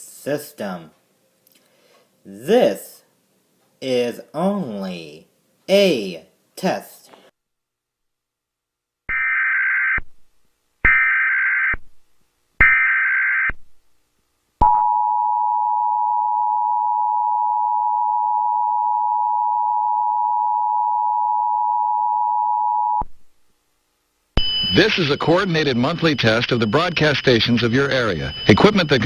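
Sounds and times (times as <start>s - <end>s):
raspy digital data bursts: 24.4s - 29.0s
two-tone attention signal: 24.4s - 29.0s.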